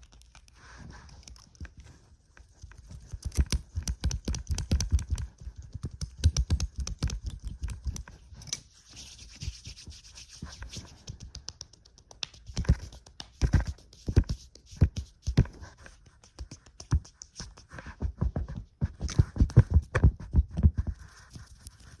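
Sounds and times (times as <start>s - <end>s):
scratchy rubbing: 0.0s - 18.1s, 18.9s - 22.0s
rapid taps on microphone: 3.1s - 8.1s, 10.8s - 21.0s.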